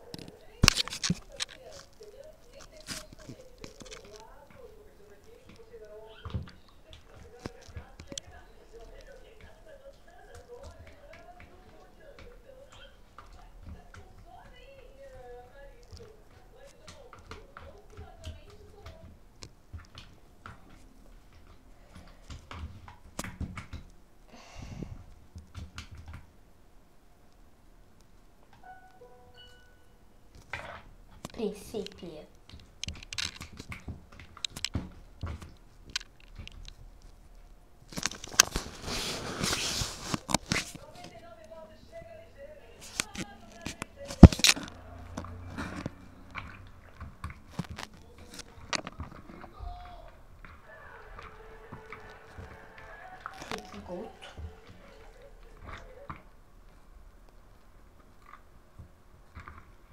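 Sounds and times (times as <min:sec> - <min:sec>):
crackling rustle: 0:00.0 - 0:24.0, 0:30.4 - 0:42.1.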